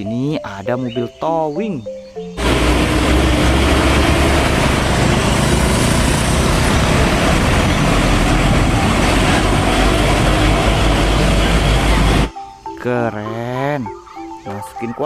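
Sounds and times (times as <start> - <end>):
road noise: 2.2 - 12.8
heavy truck engine running: 2.4 - 12.3.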